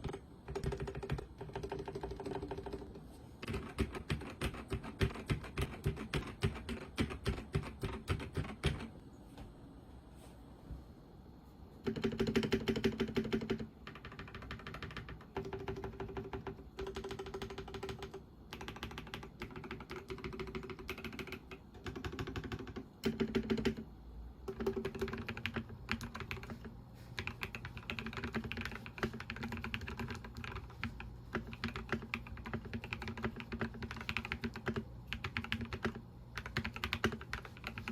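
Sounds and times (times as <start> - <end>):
typing on mechanical keyboard: 0.0 - 9.0, 11.8 - 37.9.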